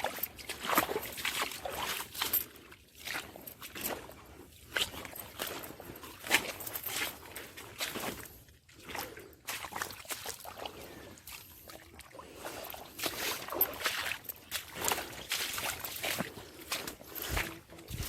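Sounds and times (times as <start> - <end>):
footsteps splashing through water: 0.0 - 18.0.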